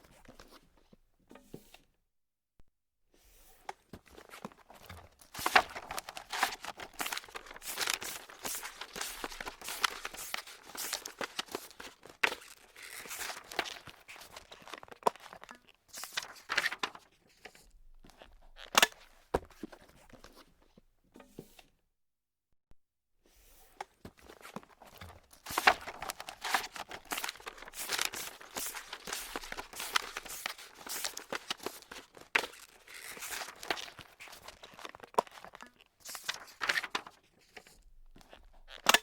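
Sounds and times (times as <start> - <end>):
paper crumpling: 4.2 - 15.4, 24.3 - 37.2.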